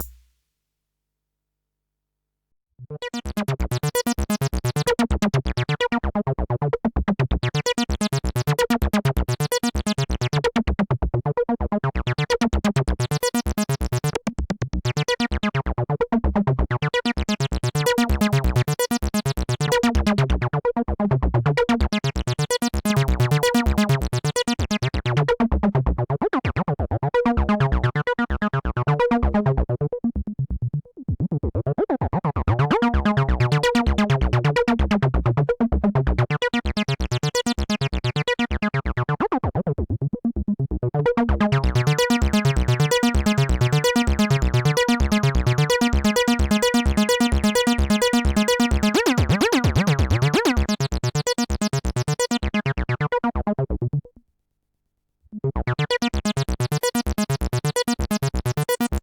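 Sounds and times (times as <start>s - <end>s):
analog bass synthesizer sequence: 0.0s - 0.2s, 3.0s - 14.2s, 14.8s - 25.2s, 32.4s - 54.2s, 55.3s - 59.0s.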